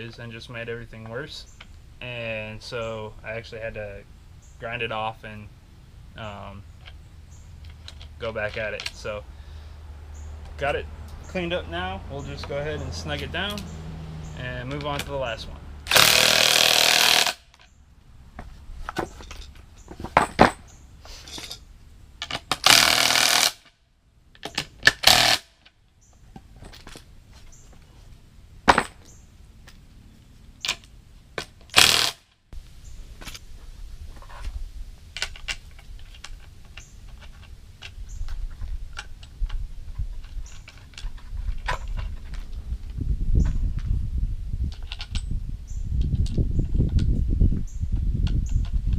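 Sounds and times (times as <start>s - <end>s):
power tool bursts: 15.9s - 17.4s, 22.6s - 23.6s, 24.9s - 25.5s, 31.7s - 32.2s
metal clinks and knocks: 18.9s - 22.5s, 26.1s - 27.7s.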